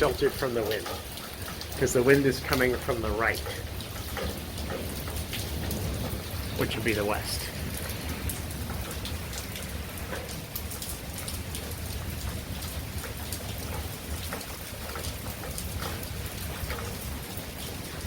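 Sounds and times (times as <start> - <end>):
heavy rain falling: 0.0 - 18.0
raindrops striking close by: 0.0 - 18.0.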